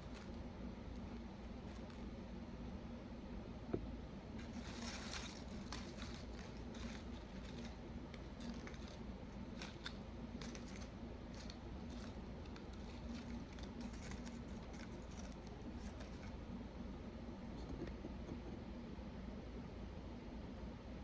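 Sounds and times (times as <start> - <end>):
low steady hum: 0.0 - 21.0
food being handled and eaten: 4.4 - 16.5.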